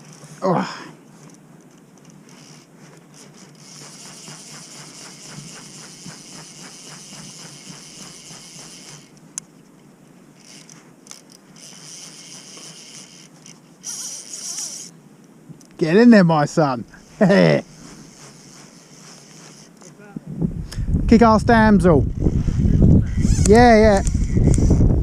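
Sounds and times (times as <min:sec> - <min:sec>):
fly reel ratchet buzzing: 0:00.0 - 0:00.4, 0:02.0 - 0:09.4, 0:10.3 - 0:15.0, 0:16.9 - 0:20.0, 0:23.0 - 0:24.9.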